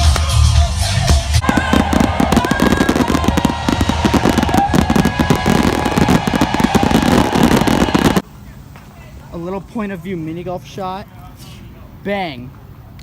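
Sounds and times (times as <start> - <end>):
fireworks crackling and banging: 0.0 - 8.9.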